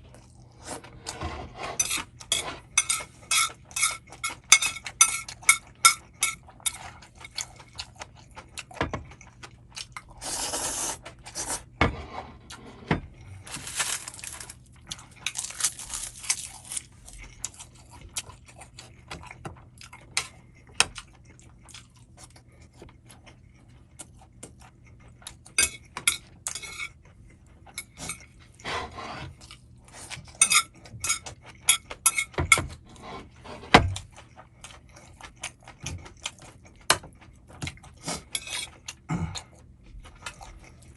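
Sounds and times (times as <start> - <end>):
utensils clinking against bowl: 1.8 - 7.5, 25.6 - 27.0, 30.3 - 32.7
slurping noodles: 10.2 - 11.7.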